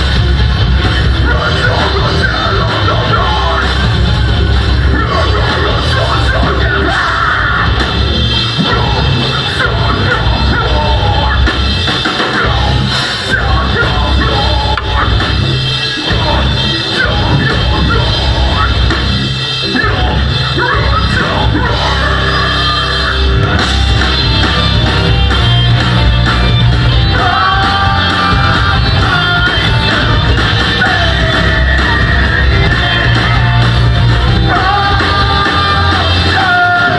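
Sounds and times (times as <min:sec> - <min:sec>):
metalcore band playing: 0:00.0 - 0:36.9
pounding drum kit: 0:00.0 - 0:36.9
harsh screamed vocals: 0:00.9 - 0:24.5.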